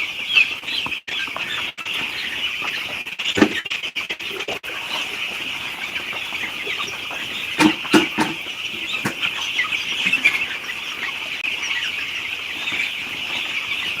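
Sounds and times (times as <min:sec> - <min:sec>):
chicks cheeping: 0:00.0 - 0:14.0
sharp knocks: 0:07.6 - 0:09.3.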